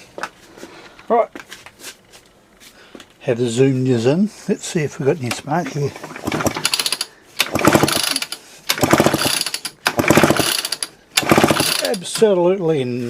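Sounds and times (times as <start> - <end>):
chainsaw recoil starter ratcheting: 6.1 - 12.2.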